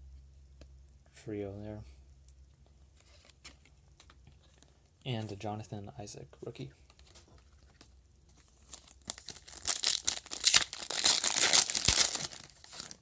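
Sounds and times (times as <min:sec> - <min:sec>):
wrapper being torn and crinkled: 0:08.7 - 0:13.0.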